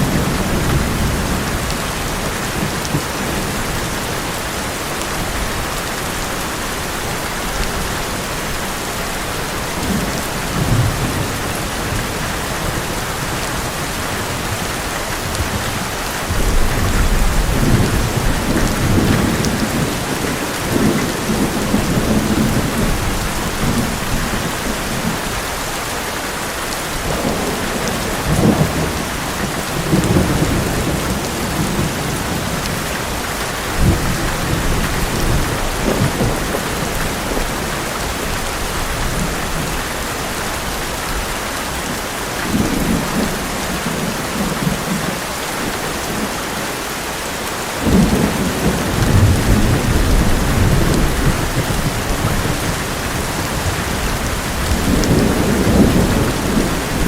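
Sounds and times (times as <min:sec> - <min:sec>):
heavy rain on metal roof: 0:00.0 - 0:57.0
thunder rumbling: 0:09.2 - 0:25.5, 0:27.0 - 0:46.3, 0:47.8 - 0:57.0.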